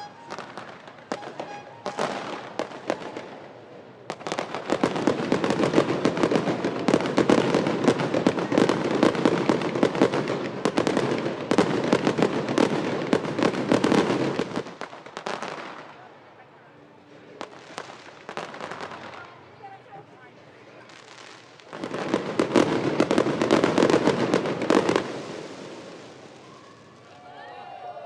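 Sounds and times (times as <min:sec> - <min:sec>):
fireworks crackling and banging: 0:00.0 - 0:27.2.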